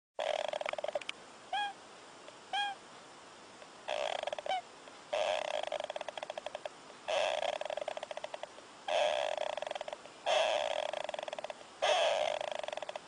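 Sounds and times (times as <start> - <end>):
small animal snoring: 0.2 - 1.1, 3.9 - 13.0.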